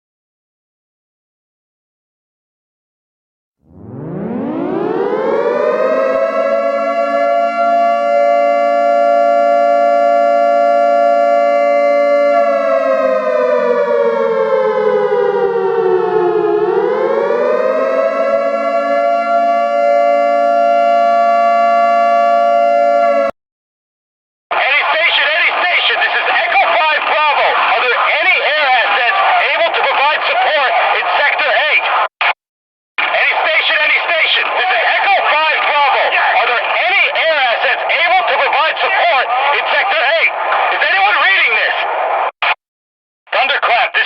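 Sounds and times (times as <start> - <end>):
civil defense siren wailing: 3.6 - 23.4.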